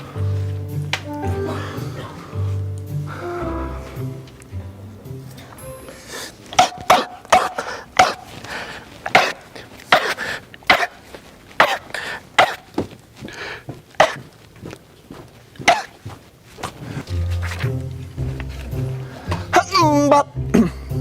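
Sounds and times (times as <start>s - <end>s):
music: 0.0s - 6.2s, 17.0s - 21.0s
people fake sneezing: 1.3s - 4.2s, 5.5s - 8.4s, 9.1s - 11.0s, 11.6s - 12.7s, 14.0s - 14.3s, 15.7s - 16.0s.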